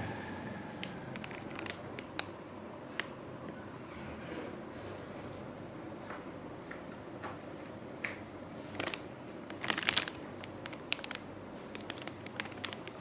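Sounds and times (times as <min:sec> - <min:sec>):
room noise: 0:00.0 - 0:13.0
hands handling packaging: 0:00.8 - 0:02.4, 0:08.6 - 0:13.0.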